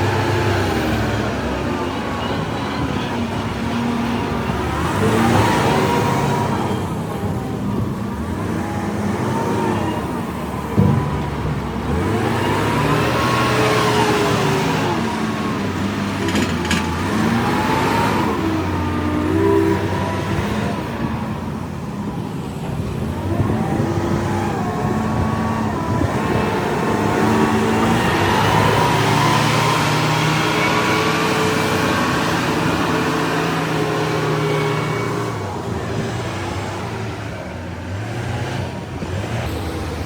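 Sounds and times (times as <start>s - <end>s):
motor revving up and down: 11.8s - 21.0s, 23.0s - 37.2s.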